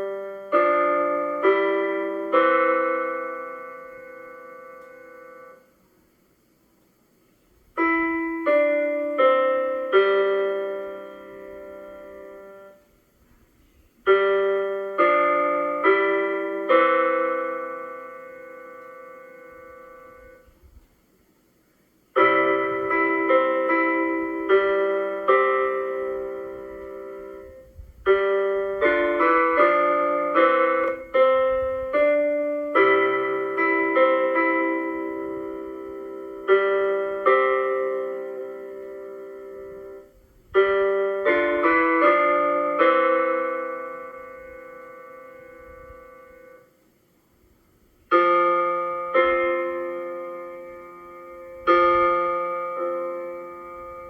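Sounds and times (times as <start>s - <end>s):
slow piano phrase: 0.0s - 6.2s, 7.2s - 20.9s, 22.1s - 54.0s.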